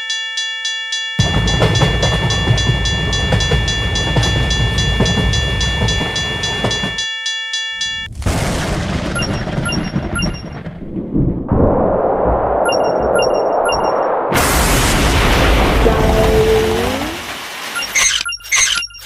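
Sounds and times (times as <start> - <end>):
level crossing bell ringing: 0.0 - 8.1
train rumbling past: 1.2 - 7.0, 14.4 - 17.5
burst of noise: 8.1 - 18.2.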